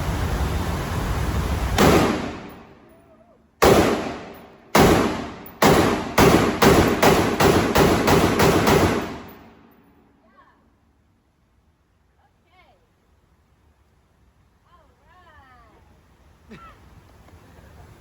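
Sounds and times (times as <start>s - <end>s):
pistol gunshots with echo: 1.8s - 2.8s, 3.6s - 9.7s.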